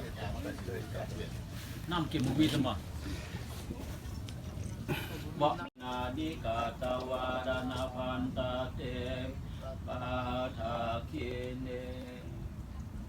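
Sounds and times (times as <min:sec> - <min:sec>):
monks chanting: 0:05.8 - 0:12.3.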